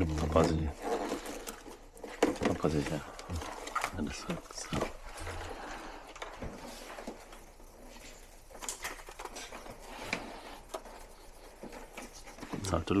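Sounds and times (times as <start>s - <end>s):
plastic parts clicking and rustling: 0.0s - 13.0s.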